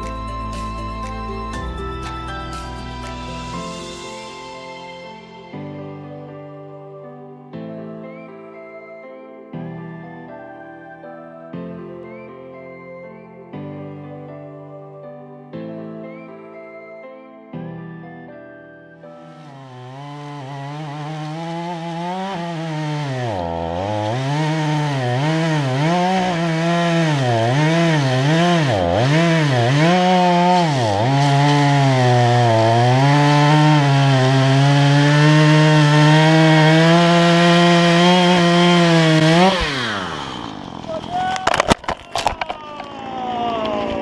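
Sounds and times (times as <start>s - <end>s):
chainsaw revving: 19.2s - 42.4s.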